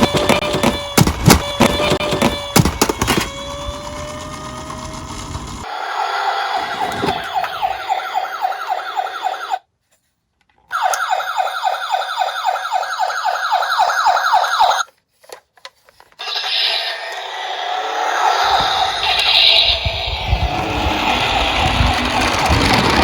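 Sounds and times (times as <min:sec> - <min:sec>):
toy electronic siren: 0:00.0 - 0:09.6, 0:10.7 - 0:14.9, 0:16.2 - 0:23.0.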